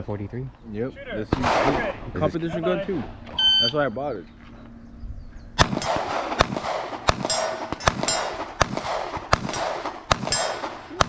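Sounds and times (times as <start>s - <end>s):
pistol shots with ringing echo: 1.3s - 1.9s, 5.6s - 11.0s.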